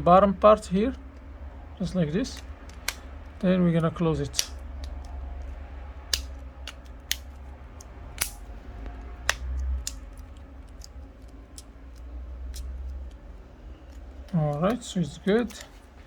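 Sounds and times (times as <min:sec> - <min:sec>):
plastic phone frame snapping: 0:02.2 - 0:03.4, 0:04.3 - 0:05.2, 0:06.0 - 0:13.2.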